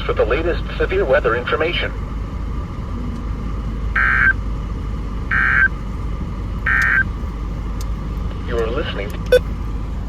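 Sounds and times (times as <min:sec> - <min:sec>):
radio hum and hiss: 0:00.0 - 0:02.0, 0:08.4 - 0:09.5.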